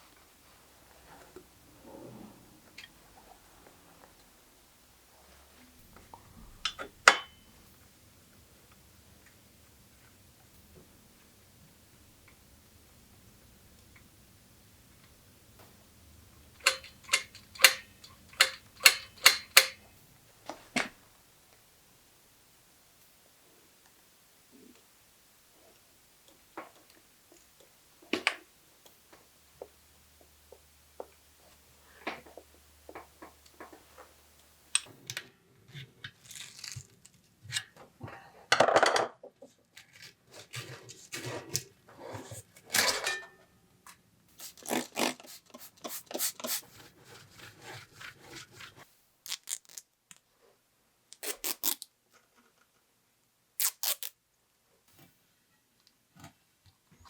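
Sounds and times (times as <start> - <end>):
loud scrape: 1.7 - 2.6
tools clicking and clinking: 16.5 - 19.8.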